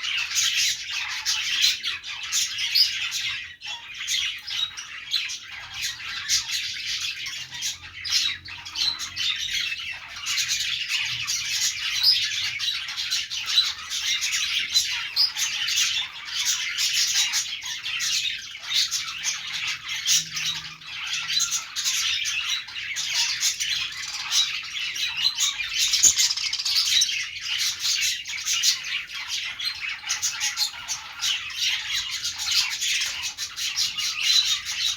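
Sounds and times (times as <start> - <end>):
budgerigars chattering: 0.0 - 34.9
sharp bird squawks: 24.0 - 27.2.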